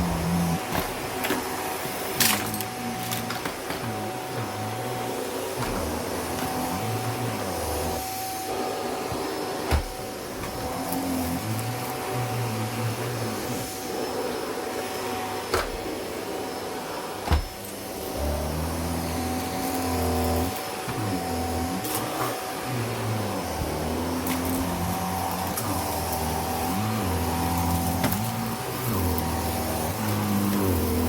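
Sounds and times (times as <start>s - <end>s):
vacuum cleaner running: 0.0s - 31.0s.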